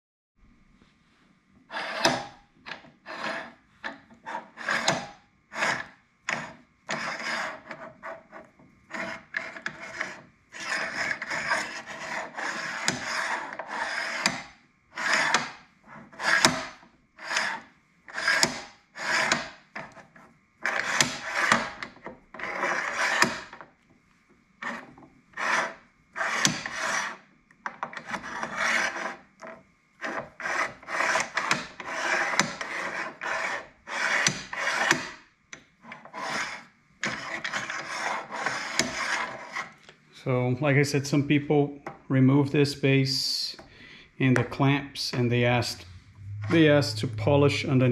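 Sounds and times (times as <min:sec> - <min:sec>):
clamps scraping along machine base: 0:01.7 - 0:23.6, 0:24.6 - 0:27.2, 0:27.8 - 0:35.2, 0:35.8 - 0:39.8.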